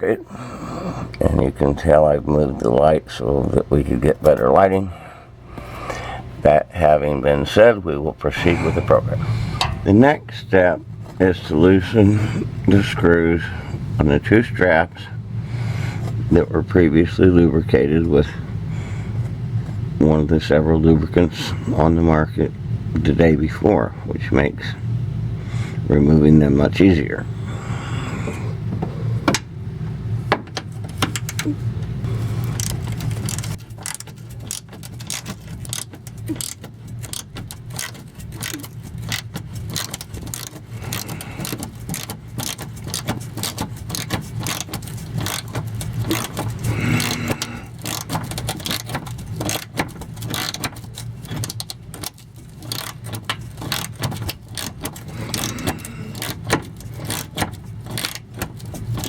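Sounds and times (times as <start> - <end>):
steady low hum: 0.0 - 59.0
socket ratchet clicking: 32.5 - 59.0.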